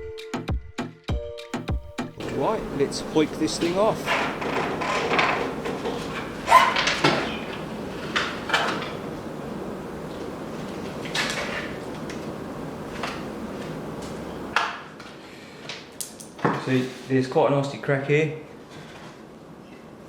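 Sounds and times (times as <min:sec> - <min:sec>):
car parts knocking and clattering: 0:02.2 - 0:12.1.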